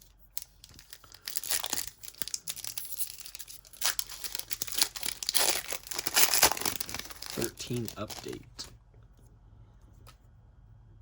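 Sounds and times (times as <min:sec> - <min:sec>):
foil wrapper tearing and crinkling: 0:00.1 - 0:08.6.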